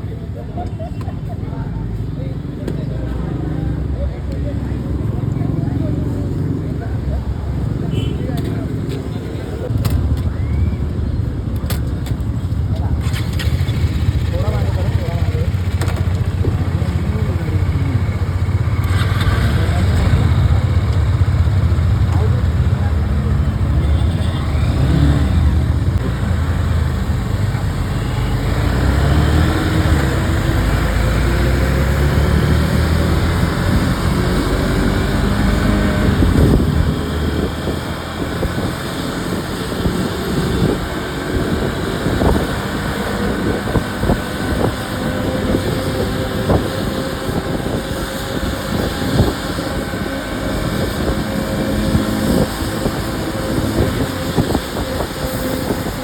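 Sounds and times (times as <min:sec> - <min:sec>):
wind and road noise: 0:00.0 - 0:56.0
motorcycle engine running: 0:12.2 - 0:28.3.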